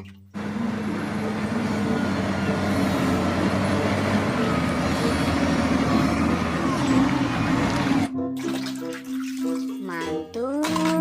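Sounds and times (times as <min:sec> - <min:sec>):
heavy vehicle engine rumbling: 0:00.4 - 0:08.1.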